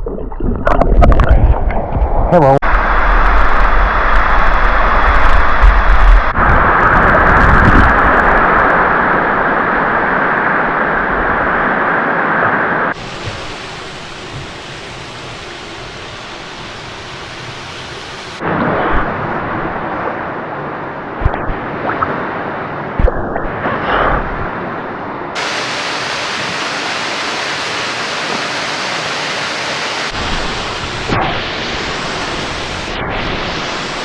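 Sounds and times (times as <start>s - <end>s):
waterfall rushing: 25.4s - 34.0s.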